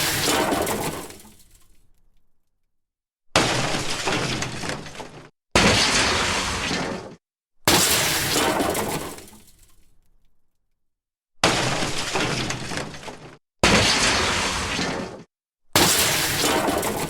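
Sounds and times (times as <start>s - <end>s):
loud crash of something breaking: 0.0s - 1.4s, 5.6s - 9.4s, 13.6s - 17.0s.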